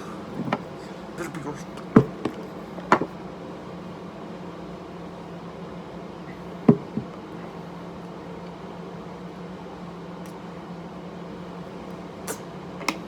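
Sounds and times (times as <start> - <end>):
fan humming: 0.0 - 13.0.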